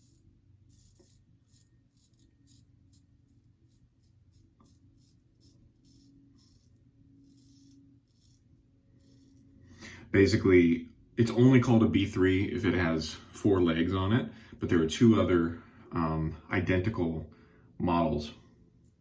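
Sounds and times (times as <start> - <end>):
razor scraping stubble: 0.0 - 10.4.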